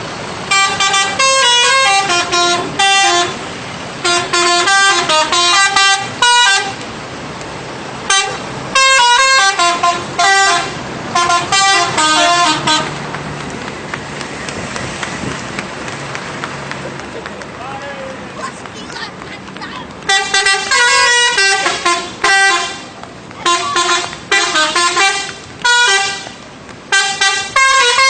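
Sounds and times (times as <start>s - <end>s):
multi-tone air horn melody: 0.5s - 3.4s, 4.0s - 6.8s, 8.0s - 13.0s, 20.1s - 28.0s.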